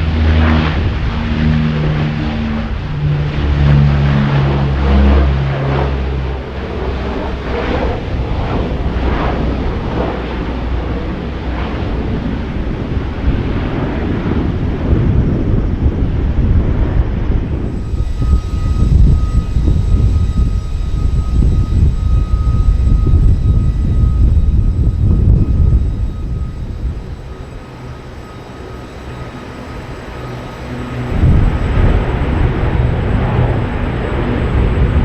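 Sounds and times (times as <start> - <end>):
military aircraft engines running: 0.0 - 35.0.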